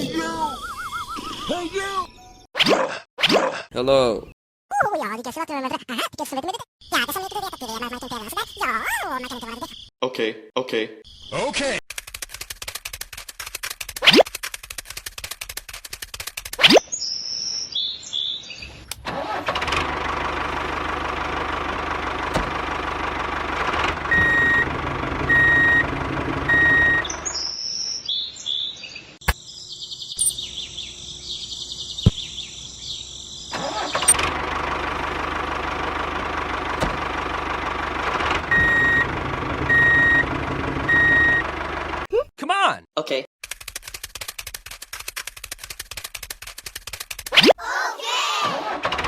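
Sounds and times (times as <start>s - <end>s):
vehicle engine running: 19.3s - 27.4s, 33.1s - 42.1s.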